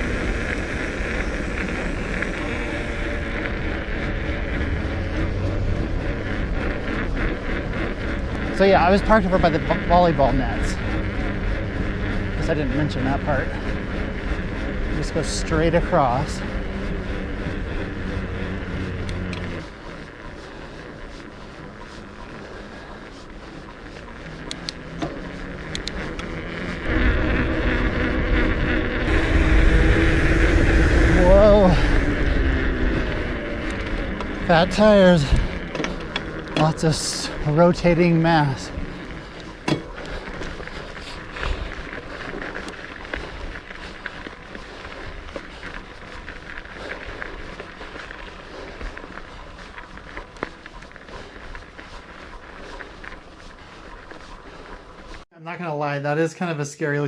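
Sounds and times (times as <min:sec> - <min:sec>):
faint ticks and rattles: 0:00.0 - 0:26.9
wind buffeting microphone: 0:00.0 - 0:55.2
bike tyres rumbling: 0:00.0 - 0:55.3.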